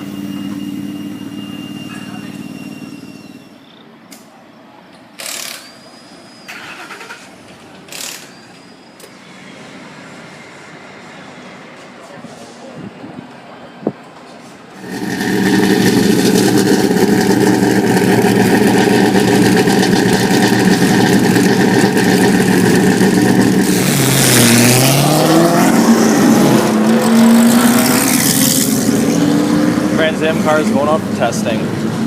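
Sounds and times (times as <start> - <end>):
race car engines idling: 0.0 - 3.5, 14.8 - 24.5, 29.7 - 32.0
race car engines revving: 0.0 - 3.6, 14.7 - 32.0.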